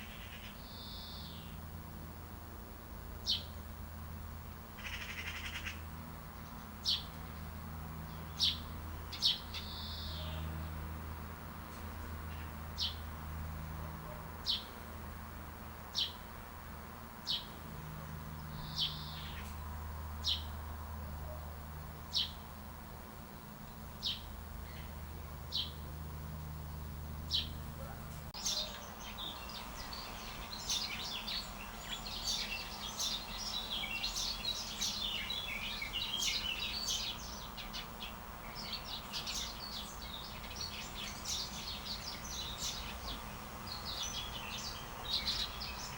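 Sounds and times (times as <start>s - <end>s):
chorus of small birds chirping: 0.0s - 1.6s, 3.2s - 3.7s, 4.7s - 11.0s, 12.2s - 14.8s, 15.9s - 16.5s, 17.2s - 45.9s
low hum: 16.3s - 28.4s.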